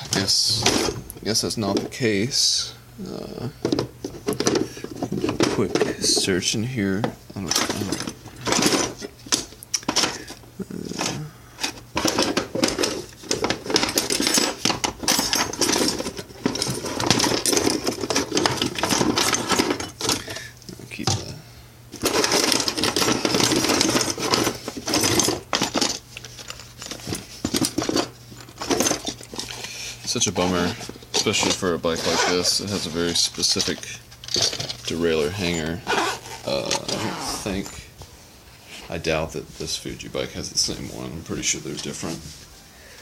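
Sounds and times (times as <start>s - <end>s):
small metal pieces clattering: 11.0s - 20.4s, 22.0s - 31.7s, 32.6s - 35.8s.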